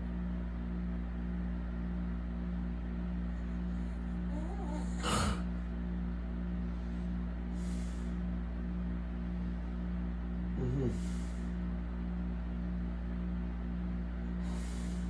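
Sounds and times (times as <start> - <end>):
steady low hum: 0.0 - 15.0
man snorting in sleep: 4.2 - 5.6, 10.5 - 11.6, 14.4 - 15.0
breathy hiss: 14.4 - 15.0.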